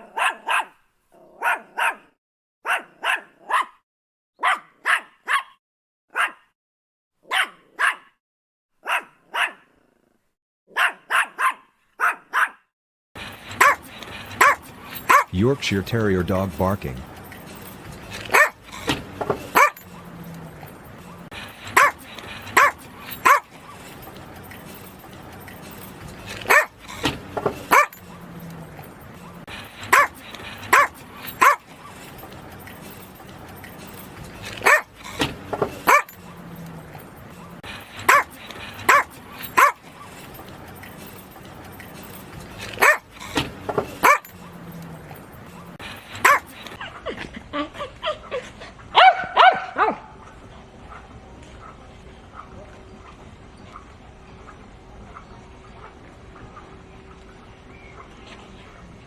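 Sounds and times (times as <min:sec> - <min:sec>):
small dog barking: 0:00.0 - 0:00.8, 0:01.4 - 0:03.8, 0:04.4 - 0:06.5, 0:07.3 - 0:08.1, 0:08.8 - 0:09.7, 0:10.7 - 0:12.6, 0:13.6 - 0:13.8, 0:14.4 - 0:15.3, 0:18.2 - 0:18.6, 0:19.5 - 0:20.1, 0:21.8 - 0:22.0, 0:22.6 - 0:23.5, 0:26.4 - 0:26.8, 0:27.6 - 0:28.1, 0:29.9 - 0:31.7, 0:34.6 - 0:34.9, 0:35.8 - 0:36.2, 0:38.1 - 0:38.3, 0:38.9 - 0:39.8, 0:42.8 - 0:43.0, 0:44.0 - 0:44.5, 0:46.2 - 0:46.5, 0:49.0 - 0:50.1.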